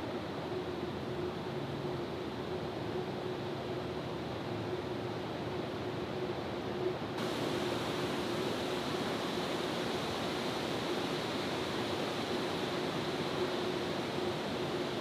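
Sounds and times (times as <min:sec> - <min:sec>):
faint steady hum: 0:07.2 - 0:15.0
steady rushing noise: 0:07.2 - 0:15.0.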